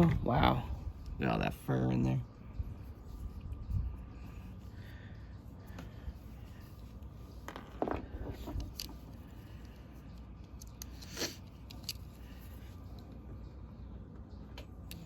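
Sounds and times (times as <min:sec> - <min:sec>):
plastic parts scraping and clicking: 0:07.4 - 0:09.2.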